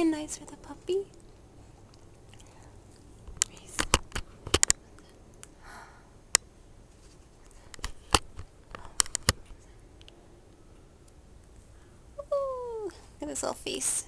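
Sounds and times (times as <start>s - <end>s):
soft breathy sound: 4.9s - 6.2s.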